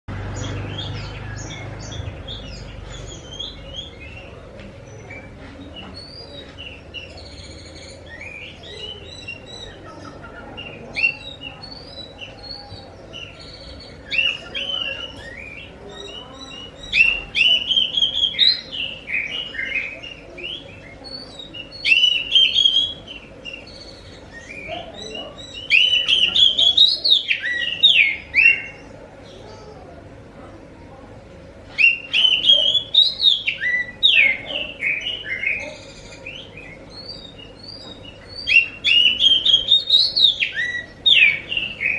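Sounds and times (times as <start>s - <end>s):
bird singing whistled phrases: 14.0s - 24.7s, 31.8s - 35.7s.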